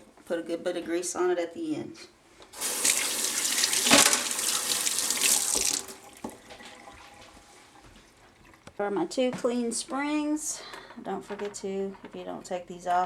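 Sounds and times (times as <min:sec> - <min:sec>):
water running from a tap: 0:02.6 - 0:08.6.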